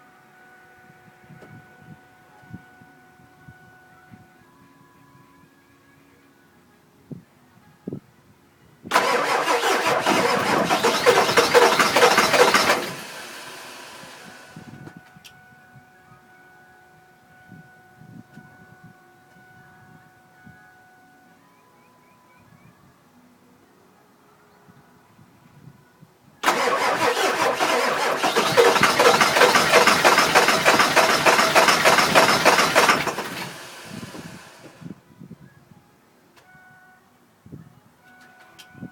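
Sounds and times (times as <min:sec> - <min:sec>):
diesel engine cranking on starter: 0:08.9 - 0:14.7, 0:26.4 - 0:34.8.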